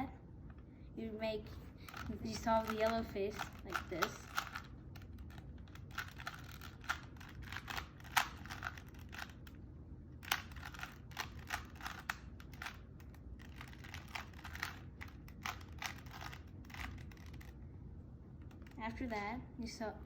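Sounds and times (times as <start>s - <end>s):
puzzle cube clicking: 1.9s - 9.6s, 10.2s - 17.6s.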